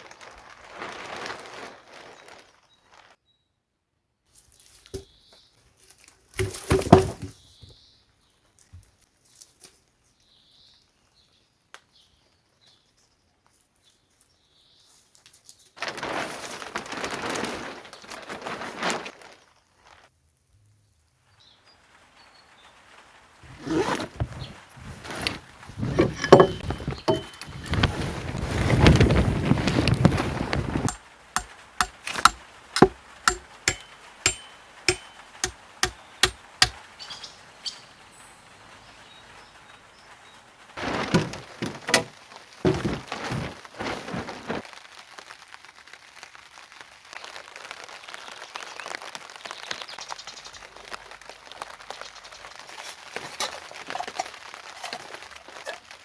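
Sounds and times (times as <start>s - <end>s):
faint steady rain: 0.0s - 56.0s
rustling and handling: 5.8s - 7.4s, 23.4s - 36.8s, 40.8s - 44.6s
sharp knocks: 6.4s - 7.3s, 25.8s - 27.8s, 30.9s - 36.8s.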